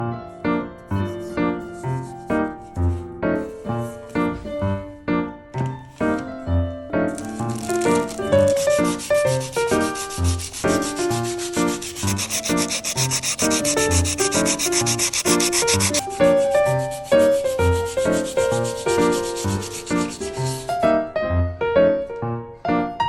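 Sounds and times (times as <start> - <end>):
background music: 0.3 - 23.0
rubbing on steel plate: 7.2 - 20.8.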